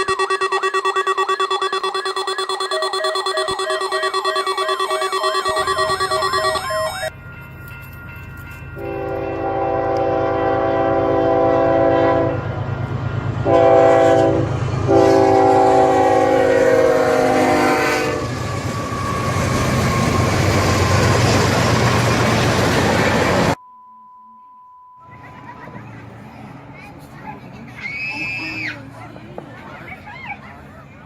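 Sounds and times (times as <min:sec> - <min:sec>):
train cars rolling by: 0:05.4 - 0:23.6, 0:25.1 - 0:31.0
train air horn blasts: 0:08.8 - 0:12.6, 0:13.4 - 0:18.4.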